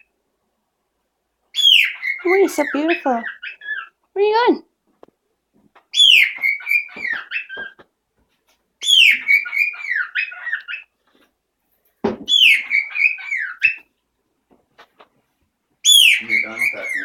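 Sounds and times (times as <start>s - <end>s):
pet bird whistling song: 1.5s - 4.0s, 5.9s - 7.8s, 8.8s - 10.9s, 12.3s - 13.9s, 15.8s - 17.0s.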